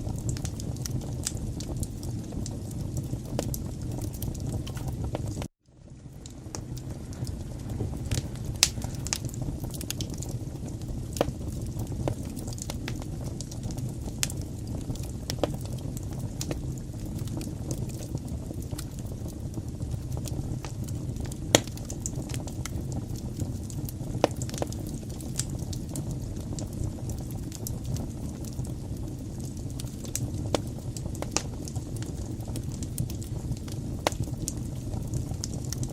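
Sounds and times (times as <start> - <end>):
fire crackling and popping: 0.0 - 35.9
fire rushing: 0.0 - 35.9.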